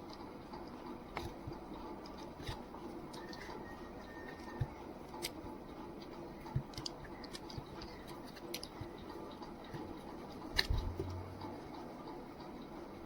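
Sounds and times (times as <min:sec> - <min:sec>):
light clicks and scratching: 0:06.0 - 0:11.7.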